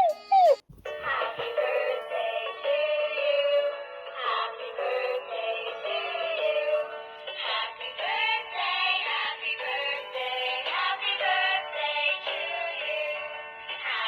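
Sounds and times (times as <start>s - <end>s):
toy electronic singing voice: 0.0s - 0.6s.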